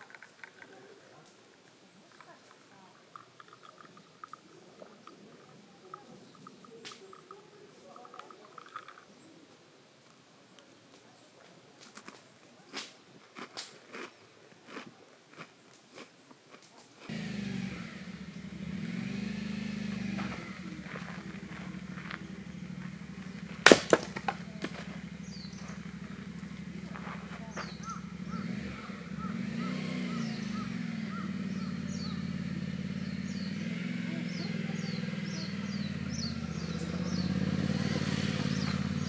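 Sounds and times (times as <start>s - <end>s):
low hum: 17.2s - 33.9s
axe splitting firewood: 23.0s - 27.4s.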